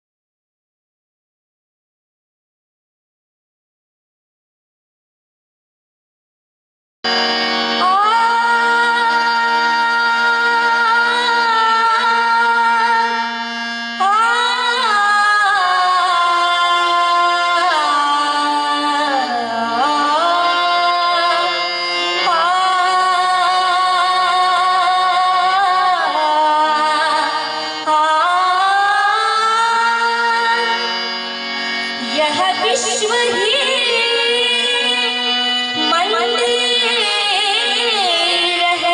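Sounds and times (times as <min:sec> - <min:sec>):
sustained instrumental accompaniment: 0:07.1 - 0:38.9
devotional singing: 0:14.0 - 0:38.9.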